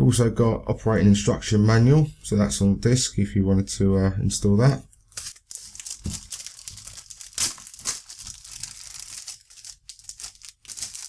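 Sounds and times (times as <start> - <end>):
packaging crinkling and rustling: 5.1 - 11.0.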